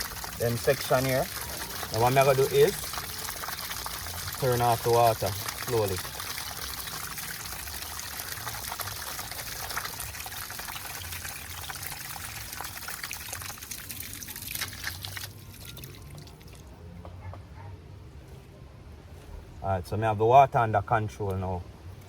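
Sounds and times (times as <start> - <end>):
water rushing and splashing: 0.0 - 16.6.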